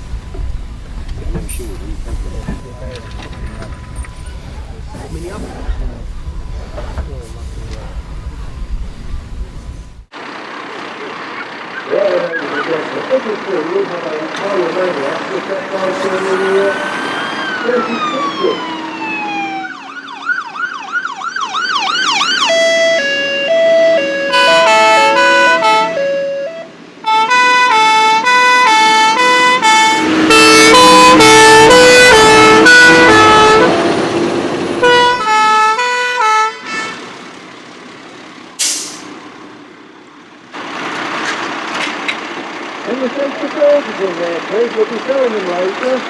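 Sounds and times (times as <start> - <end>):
siren yelp: 2.2 - 4.9, 15.9 - 33.9
two-tone siren horns: 15.8 - 37.2
short hiss: 38.6 - 39.1.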